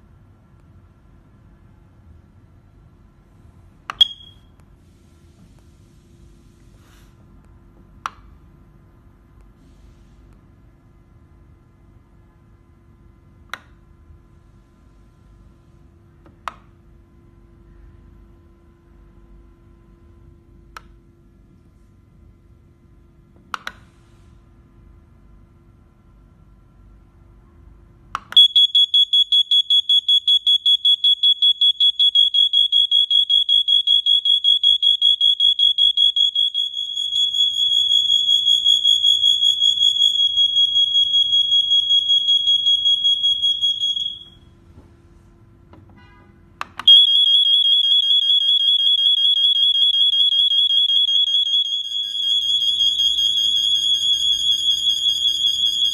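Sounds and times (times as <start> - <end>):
smoke alarms sounding: 3.9 - 4.6, 28.4 - 44.5, 46.8 - 55.9.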